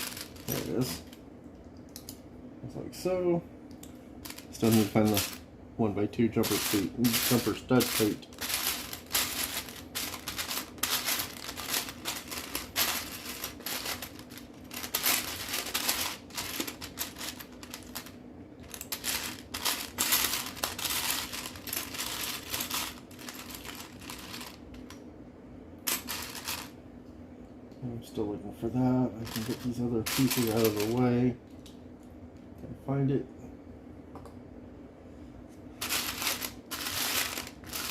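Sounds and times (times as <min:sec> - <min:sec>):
plastic toy bricks rattling: 0:06.4 - 0:18.1, 0:18.7 - 0:24.6, 0:35.8 - 0:37.9.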